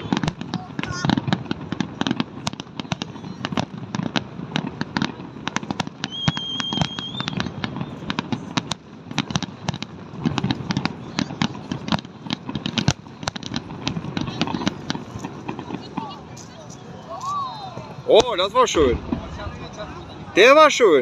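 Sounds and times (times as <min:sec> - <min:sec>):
fireworks cracking and popping: 0:00.0 - 0:21.0
thin wavering whistle: 0:06.0 - 0:07.5.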